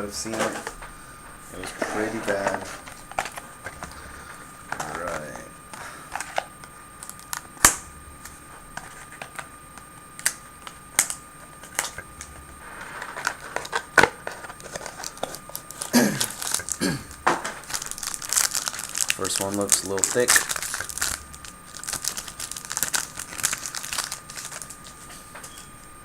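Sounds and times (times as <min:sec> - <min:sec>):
cardboard rustling: 0:01.5 - 0:05.4, 0:11.4 - 0:25.8.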